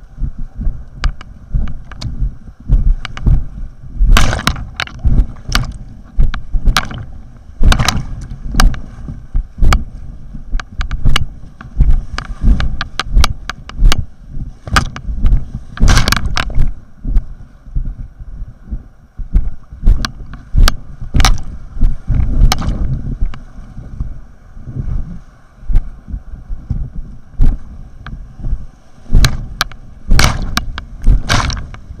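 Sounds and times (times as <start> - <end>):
water and wind buffeting microphone: 0.0 - 32.0.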